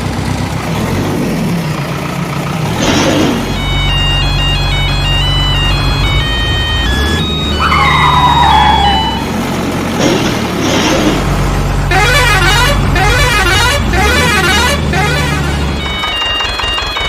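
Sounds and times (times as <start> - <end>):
low engine-like drone: 0.0 - 17.0
warbling siren-like horn: 3.3 - 9.5, 11.9 - 17.0
high-pitched electronic jingle: 3.5 - 9.4.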